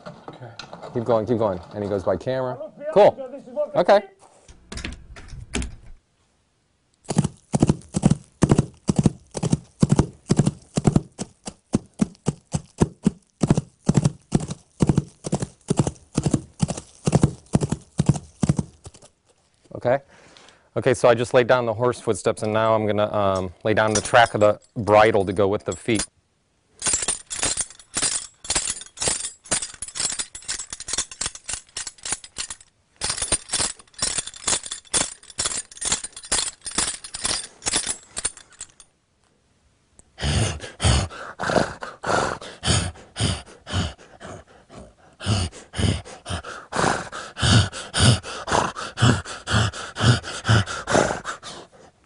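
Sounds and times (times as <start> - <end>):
metal bridle jingling: 7.0 - 19.2, 23.8 - 26.1, 26.8 - 38.9.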